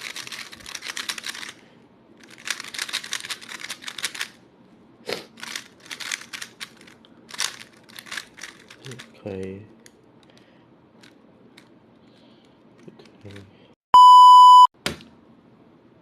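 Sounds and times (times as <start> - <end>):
puzzle cube plastic clicking turns: 5.4 - 9.1.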